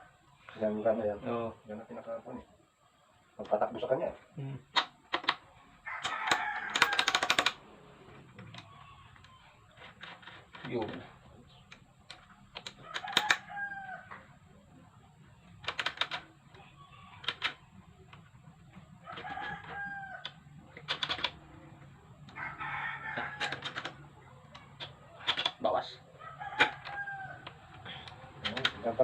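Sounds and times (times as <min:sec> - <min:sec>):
rooster crowing: 0:05.8 - 0:07.6, 0:08.5 - 0:10.0, 0:12.8 - 0:14.4, 0:19.0 - 0:20.8, 0:21.6 - 0:24.7, 0:26.0 - 0:29.0
tools clicking: 0:06.0 - 0:07.6, 0:11.7 - 0:13.5, 0:15.6 - 0:16.3, 0:17.2 - 0:18.2, 0:19.1 - 0:21.4, 0:23.2 - 0:25.6, 0:26.6 - 0:28.8.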